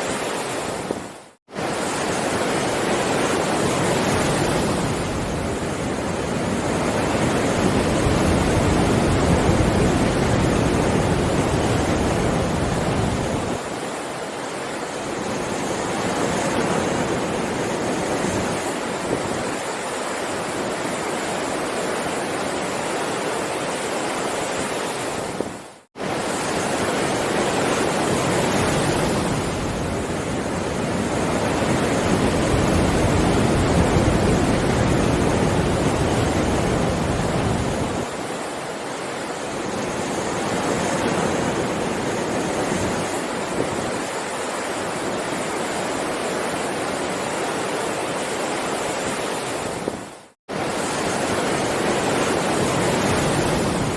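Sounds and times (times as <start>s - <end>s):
ocean waves breaking: 0.0s - 53.9s.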